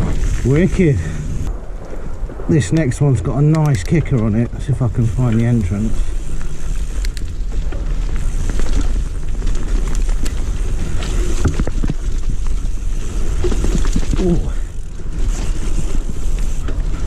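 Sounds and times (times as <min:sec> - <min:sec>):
tyres rolling over dirt: 0:00.0 - 0:17.0
wind rumbling on microphone: 0:00.0 - 0:17.0
bike rattling clicks and knocks: 0:03.4 - 0:17.0.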